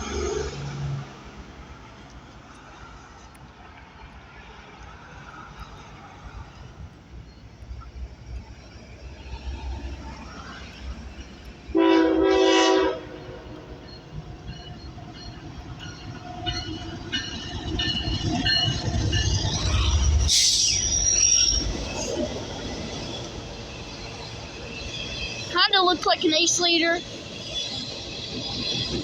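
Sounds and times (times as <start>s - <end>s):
diesel locomotive engine: 0.0s - 29.0s
train rail noise: 0.0s - 29.0s
locomotive air horn blast: 11.7s - 13.6s
wheel squeal: 13.8s - 25.6s.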